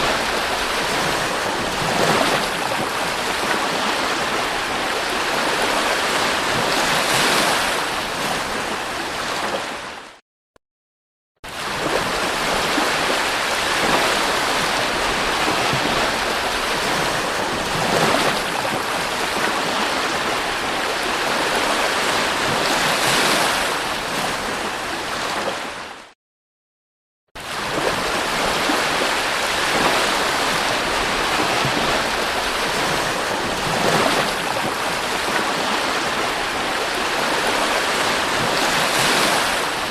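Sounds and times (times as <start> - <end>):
sea waves washing onto beach: 0.0 - 10.1, 11.5 - 26.1, 27.4 - 39.9.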